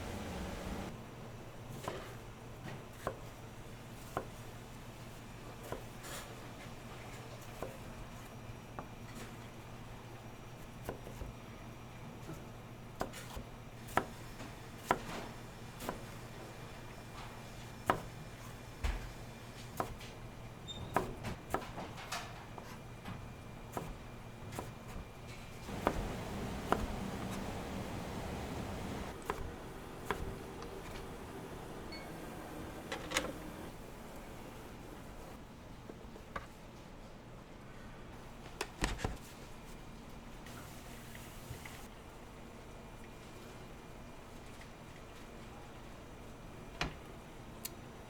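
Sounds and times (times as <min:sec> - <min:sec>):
steady low hum: 0:25.6 - 0:35.4.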